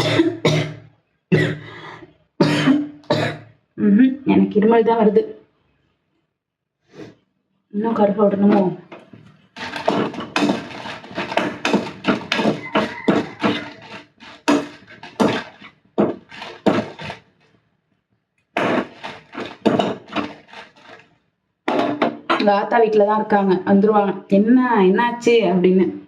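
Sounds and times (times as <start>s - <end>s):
utensil scraping in a pan: 8.2s - 17.2s, 18.6s - 21.1s.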